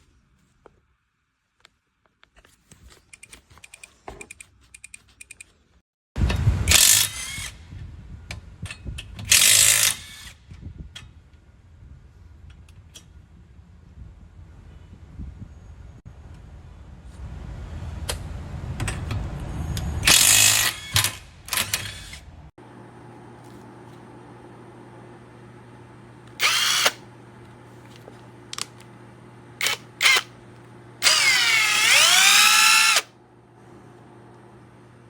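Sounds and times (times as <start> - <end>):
impact wrench motor whine: 20.0 - 22.2, 26.3 - 27.1, 29.6 - 30.4, 31.0 - 33.1.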